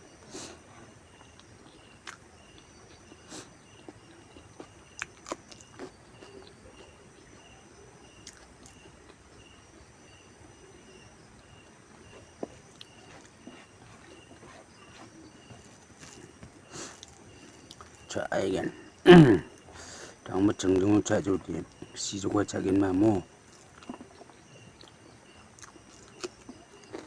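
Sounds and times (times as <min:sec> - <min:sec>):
insect chirping: 0:00.0 - 0:27.0
person chewing and crunching: 0:01.4 - 0:07.0, 0:08.2 - 0:09.2, 0:12.4 - 0:18.0, 0:23.5 - 0:27.0.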